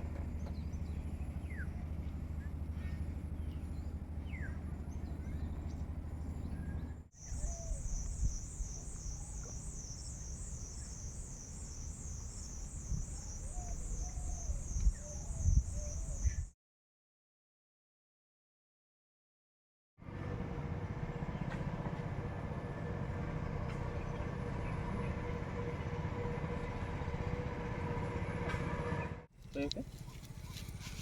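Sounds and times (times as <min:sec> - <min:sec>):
birds chirping: 0:00.2 - 0:16.5.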